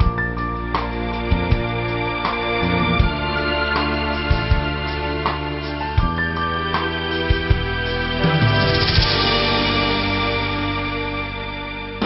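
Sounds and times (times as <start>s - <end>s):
sustained keyboard chord: 2.4s - 3.5s.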